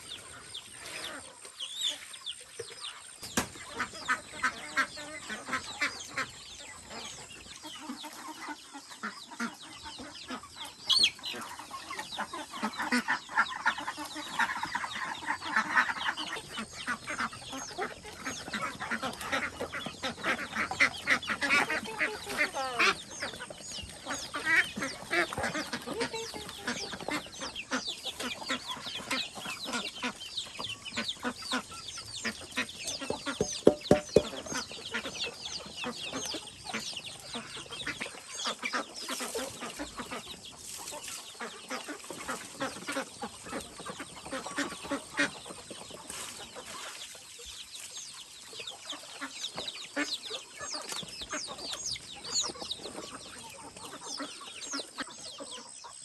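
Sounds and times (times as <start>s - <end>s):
chickens clucking: 0.0s - 56.0s
sharp knocks: 33.1s - 34.4s.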